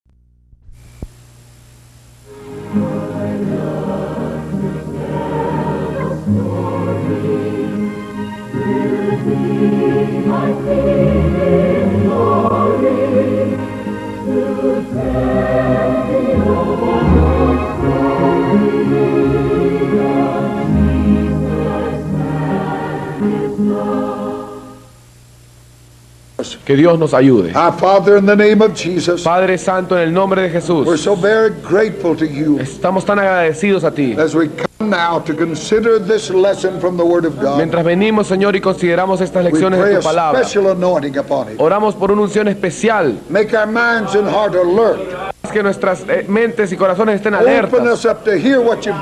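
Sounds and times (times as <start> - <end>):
faint low hum: 0.1 - 49.0
low sustained accompaniment: 2.2 - 24.8
choir singing: 2.3 - 24.9, 39.3 - 40.7, 43.6 - 45.4.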